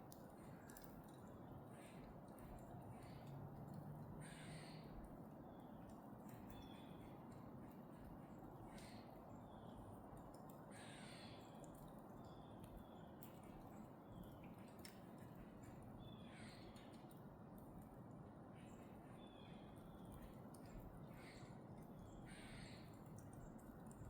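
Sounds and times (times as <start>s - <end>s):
wild bird calls: 4.2s - 5.0s, 21.1s - 23.0s.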